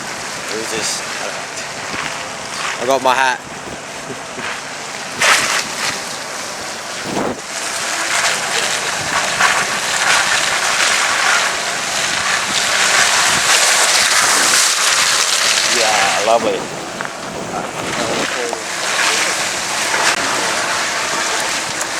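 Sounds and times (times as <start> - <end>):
wind rushing over microphone: 0.0 - 7.9, 12.0 - 20.3
truck running noise: 0.0 - 21.9.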